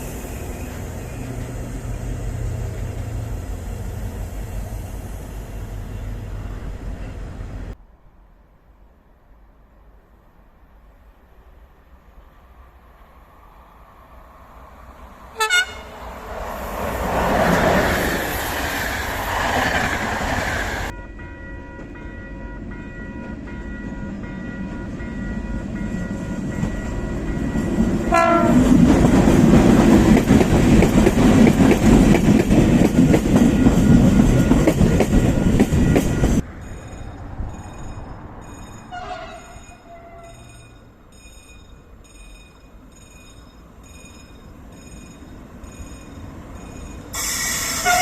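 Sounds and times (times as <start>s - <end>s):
train horn blasts: 15.4s - 16.0s, 28.0s - 28.8s, 38.9s - 40.6s, 47.2s - 48.0s
train wheels clattering over rails: 25.6s - 38.9s.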